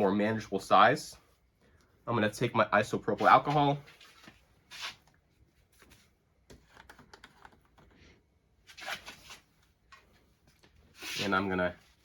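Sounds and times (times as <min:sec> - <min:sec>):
paper towels rustling: 0:10.8 - 0:12.0.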